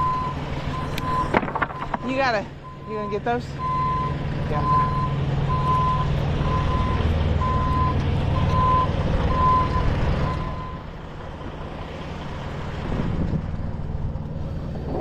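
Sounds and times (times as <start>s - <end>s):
reversing alarm beeping: 0.0s - 10.9s
truck engine running: 0.0s - 15.0s.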